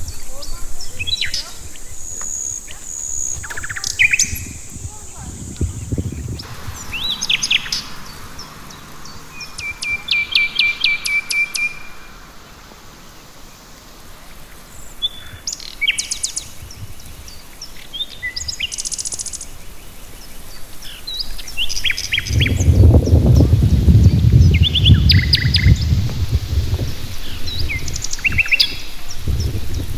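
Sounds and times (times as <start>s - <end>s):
birds singing and calling: 0.0s - 12.0s
loud low rumble: 22.2s - 27.2s.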